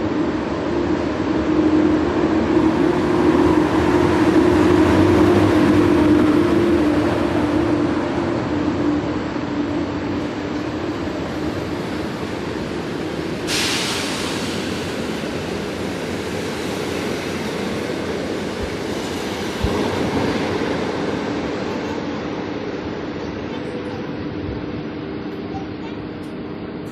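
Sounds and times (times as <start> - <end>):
train rumbling past: 0.0 - 26.9
sudden hiss: 13.4 - 16.9.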